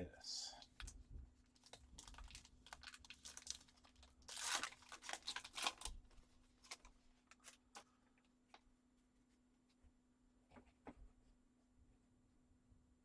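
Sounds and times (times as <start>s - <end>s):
wrapper tearing and crinkling: 1.6s - 7.8s.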